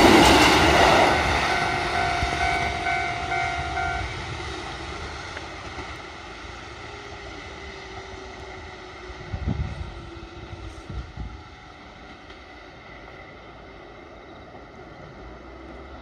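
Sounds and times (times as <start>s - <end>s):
train running: 0.0s - 16.0s
level crossing warning bell: 0.8s - 4.4s.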